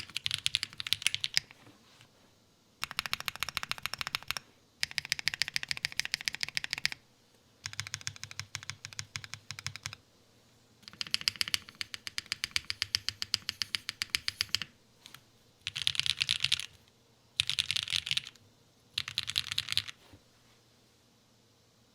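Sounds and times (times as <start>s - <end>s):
typing on mechanical keyboard: 0.0s - 1.6s, 2.8s - 7.0s, 7.6s - 10.0s, 10.8s - 16.8s, 17.4s - 18.4s, 19.0s - 20.0s.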